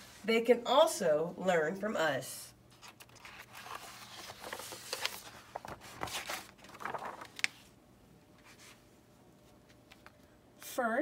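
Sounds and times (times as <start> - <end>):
paper pages rustling: 2.7 - 7.8, 8.4 - 8.8.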